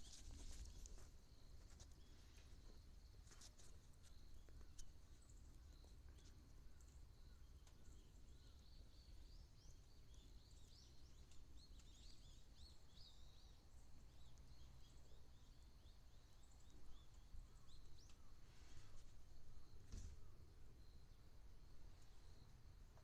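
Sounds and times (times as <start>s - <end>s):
faint birds chirping: 0.0s - 23.0s.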